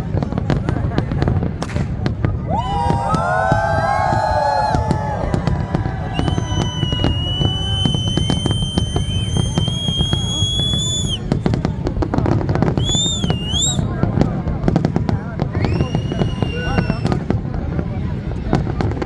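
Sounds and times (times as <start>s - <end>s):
fireworks crackling and popping: 0.0s - 19.0s
high steady whistle: 6.1s - 11.3s, 12.8s - 13.9s, 15.6s - 17.1s.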